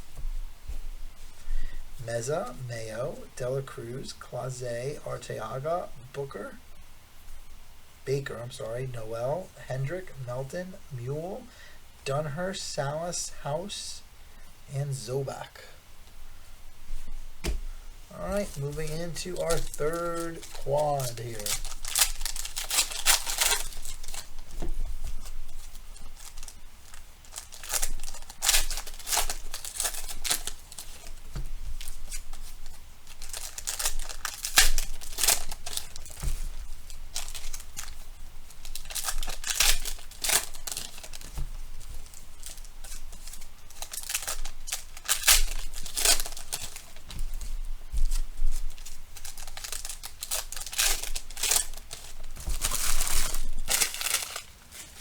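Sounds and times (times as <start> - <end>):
foil wrappers tearing and crinkling: 18.1 - 55.0.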